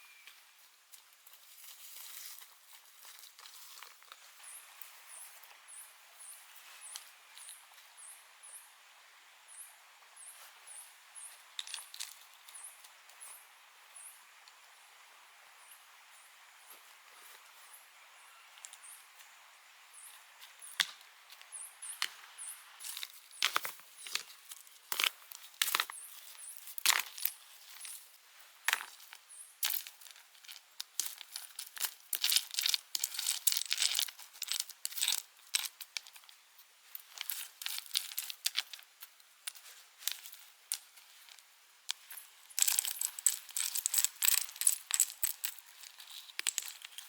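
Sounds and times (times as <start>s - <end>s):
crinkling and tearing: 42.6s - 47.0s.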